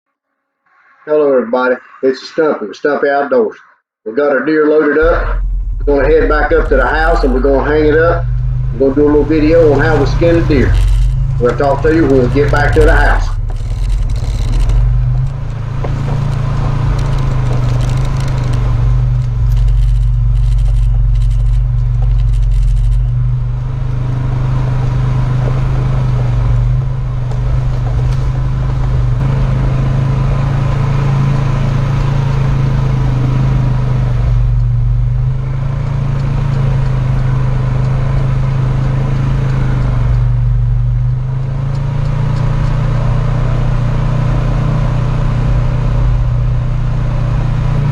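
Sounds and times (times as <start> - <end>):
road noise rumble: 4.2 - 47.9
vehicle engine droning: 4.2 - 47.9.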